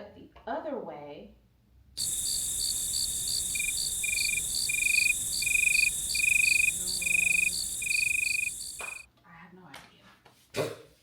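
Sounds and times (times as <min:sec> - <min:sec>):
crickets chirping: 0:02.0 - 0:09.0
lower longer insect trill: 0:02.0 - 0:09.0
steady high hiss: 0:02.0 - 0:09.0.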